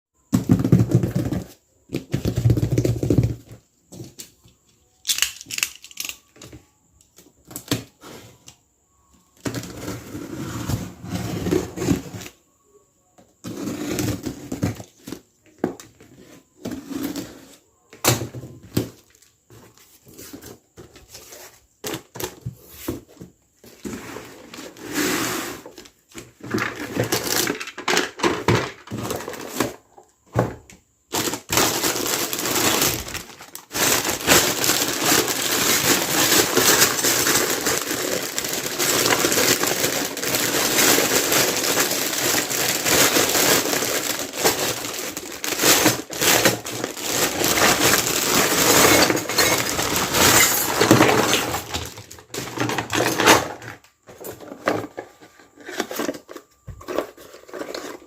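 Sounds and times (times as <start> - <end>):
packaging crinkling and rustling: 26.5 - 29.8, 31.1 - 58.0.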